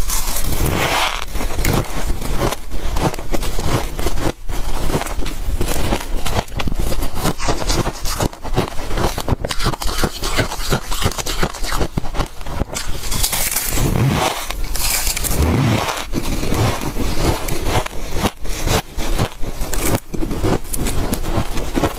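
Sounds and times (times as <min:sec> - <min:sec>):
frost crunching: 0:00.0 - 0:21.9.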